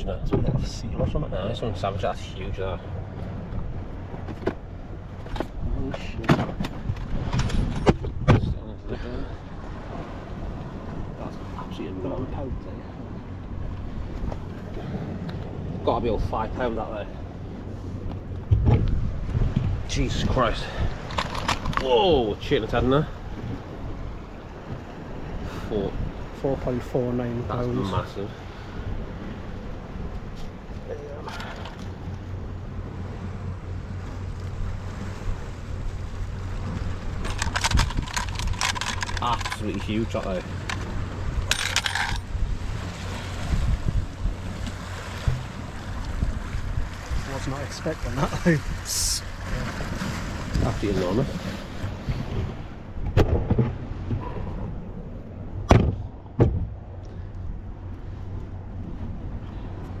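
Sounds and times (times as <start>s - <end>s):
sea noise: 0.0s - 60.0s
wind rumbling on microphone: 0.0s - 60.0s
metal tackle clicking: 37.2s - 42.3s
sharp knocks: 45.2s - 45.6s, 55.7s - 56.8s.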